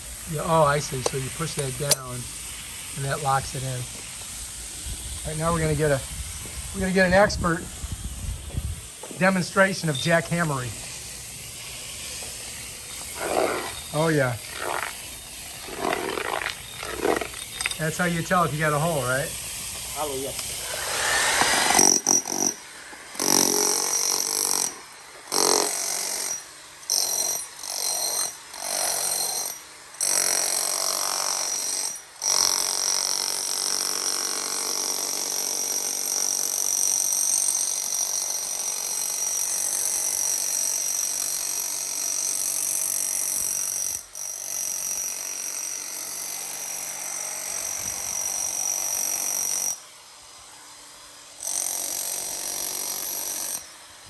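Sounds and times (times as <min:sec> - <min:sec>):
jackhammer hammering plaster: 0:15.6 - 0:19.2, 0:20.0 - 0:49.8, 0:51.4 - 0:53.7.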